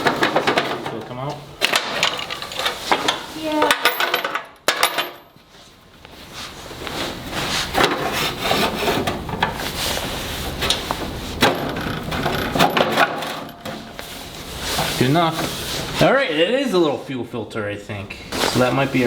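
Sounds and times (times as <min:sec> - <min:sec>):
metal tools clinking and rattling: 0:00.0 - 0:05.3, 0:11.4 - 0:14.0.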